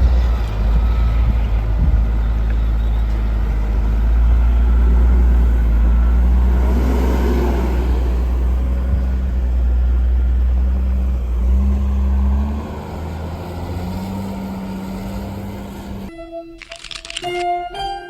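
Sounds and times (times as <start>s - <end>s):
vehicle engine rumbling: 0.0s - 17.2s.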